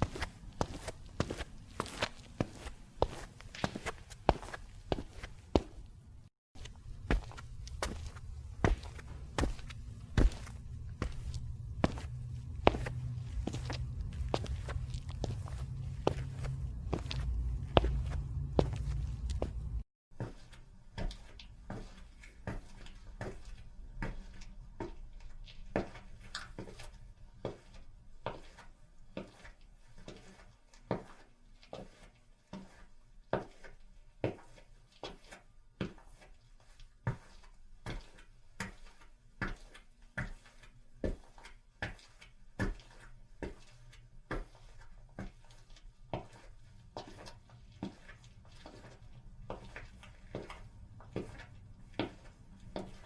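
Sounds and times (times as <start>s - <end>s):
footsteps on concrete: 0.0s - 6.0s, 6.6s - 25.0s, 37.1s - 53.0s.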